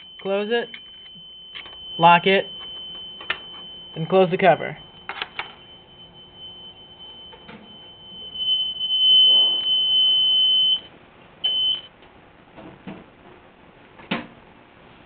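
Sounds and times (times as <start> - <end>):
high steady alarm tone: 0.0 - 11.9.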